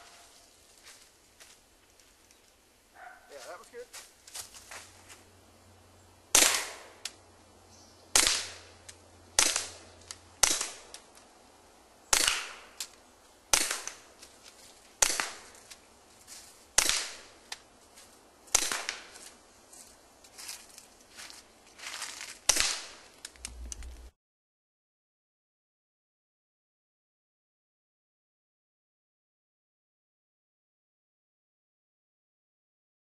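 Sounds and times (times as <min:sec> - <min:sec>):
suppressed pistol shots: 0:06.3 - 0:07.0, 0:08.1 - 0:08.7, 0:09.4 - 0:11.0, 0:12.1 - 0:12.7, 0:13.5 - 0:14.0, 0:15.0 - 0:15.5, 0:18.5 - 0:19.1.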